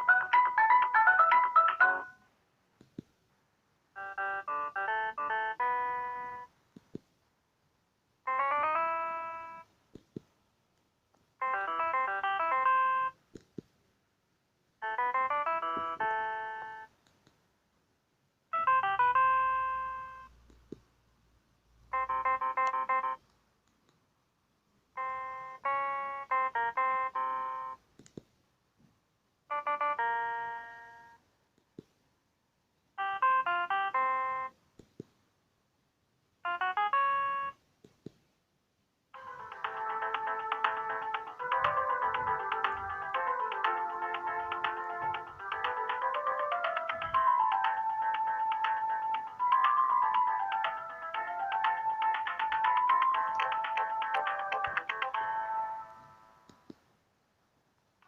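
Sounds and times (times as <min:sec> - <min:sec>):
mobile phone ringtone melodies: 0:00.0 - 0:02.3, 0:04.0 - 0:06.5, 0:08.3 - 0:09.7, 0:11.4 - 0:13.2, 0:14.8 - 0:16.9, 0:18.6 - 0:20.3, 0:21.9 - 0:23.2, 0:25.0 - 0:27.8, 0:29.5 - 0:31.2, 0:33.0 - 0:34.6, 0:36.5 - 0:37.6, 0:39.2 - 0:56.5.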